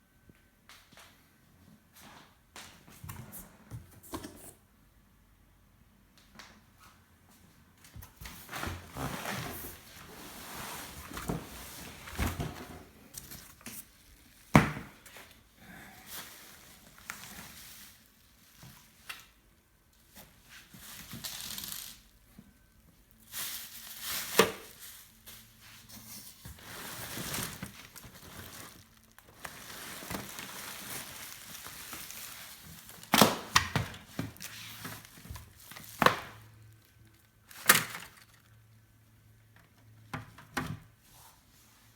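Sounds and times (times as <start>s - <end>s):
packaging crinkling and rustling: 16.1s - 19.3s, 23.2s - 38.7s.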